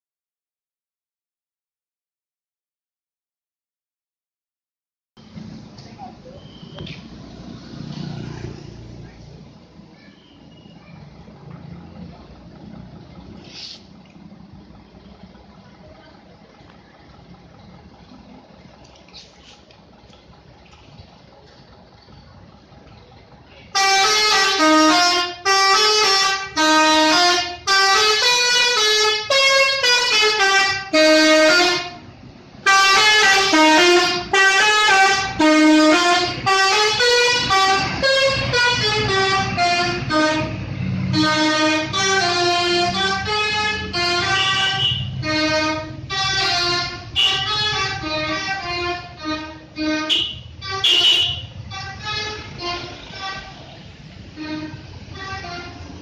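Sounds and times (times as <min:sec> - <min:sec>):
musical air horn melody: 0:23.8 - 0:32.0, 0:32.6 - 0:53.6.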